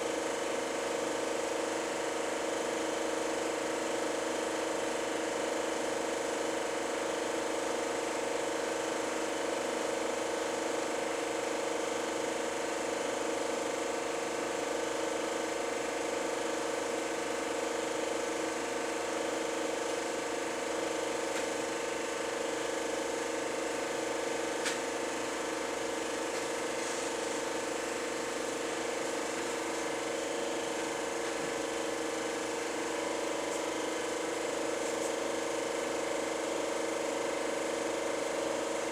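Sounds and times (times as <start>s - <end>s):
film projector whirring: 0.0s - 38.9s
small click: 24.6s - 24.8s.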